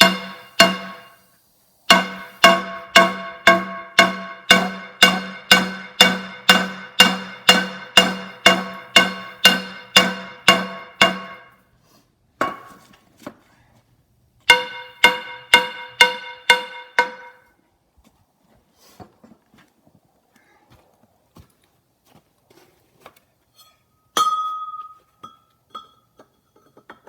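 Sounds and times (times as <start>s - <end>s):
hammer striking metal on anvil: 0.0s - 1.2s, 1.9s - 11.6s, 14.5s - 17.5s.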